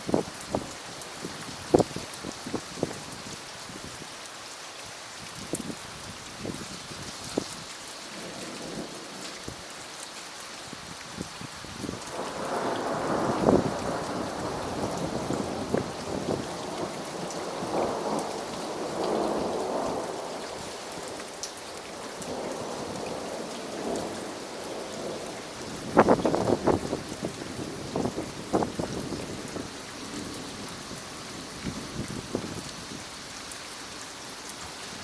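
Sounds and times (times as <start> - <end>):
rain falling: 0.0 - 35.0
thunder crackling burst: 12.1 - 20.2
thunder rumbling: 12.1 - 21.2, 21.9 - 32.7.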